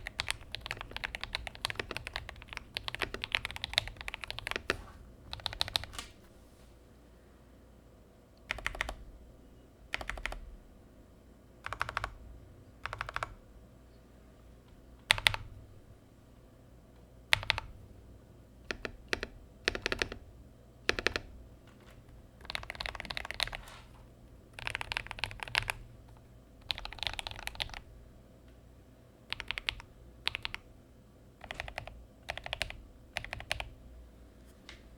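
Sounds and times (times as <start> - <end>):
mechanical keyboard typing: 0.0 - 6.1, 8.5 - 9.0, 9.9 - 10.5, 11.6 - 12.2, 12.8 - 13.4, 15.0 - 15.6, 17.3 - 17.8, 18.6 - 21.3, 22.4 - 23.9, 24.6 - 25.9, 26.6 - 27.9, 29.3 - 30.6, 31.4 - 33.7.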